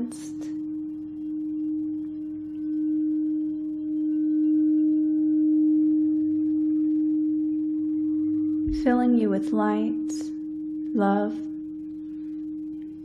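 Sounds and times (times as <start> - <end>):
singing bowl low tone: 0.0 - 13.0.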